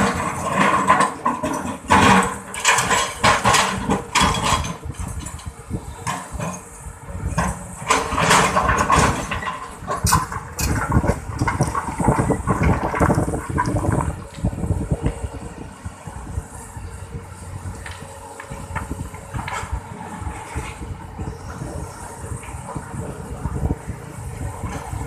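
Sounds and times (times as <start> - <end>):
knocks and clatter: 0.0 - 6.6, 7.4 - 14.1
excavator diesel engine working: 0.0 - 25.0.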